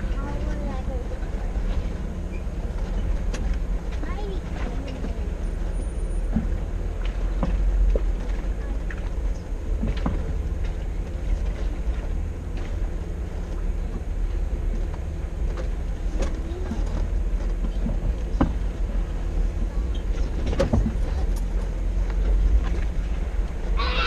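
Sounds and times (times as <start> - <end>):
off-road vehicle engine rumbling: 0.0 - 24.0
knocks and rattles: 20.0 - 23.0.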